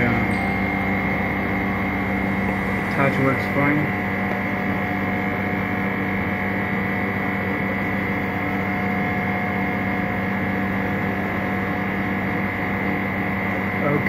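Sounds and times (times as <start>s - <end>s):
steady tones: 0.0s - 7.8s
workshop equipment humming: 0.0s - 14.0s.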